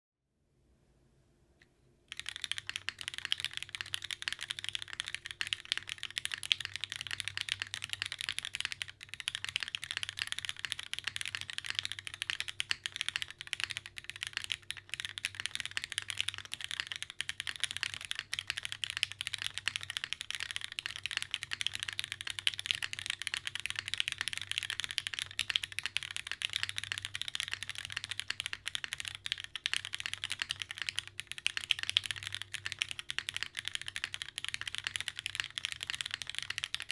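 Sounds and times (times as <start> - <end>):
fast mechanical keyboard typing: 2.1 - 36.9.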